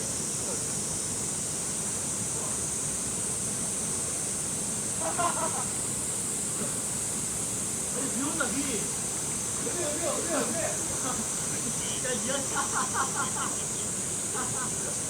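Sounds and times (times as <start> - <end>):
high hiss: 0.0 - 15.0
stream rushing: 8.2 - 15.0.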